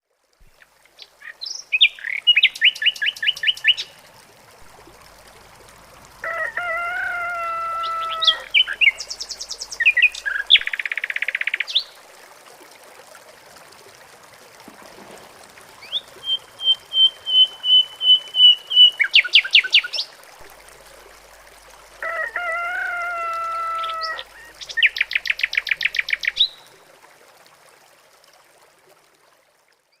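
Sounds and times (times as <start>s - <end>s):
flowing river water: 0.0s - 30.0s
birds singing and calling: 7.8s - 11.9s, 15.8s - 20.0s.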